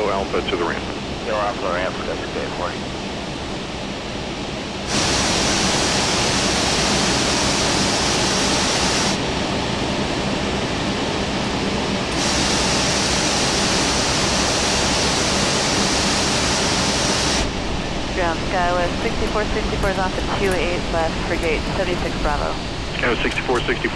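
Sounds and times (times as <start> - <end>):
airplane cockpit noise: 0.0 - 23.9
low hum: 0.0 - 23.9
loud hiss: 4.9 - 9.2, 12.1 - 23.9.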